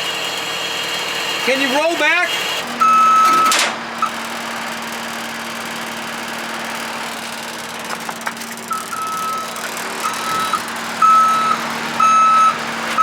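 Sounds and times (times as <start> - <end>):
engine running: 0.0 - 13.0
reversing alarm beeping: 2.8 - 4.2, 8.7 - 13.0.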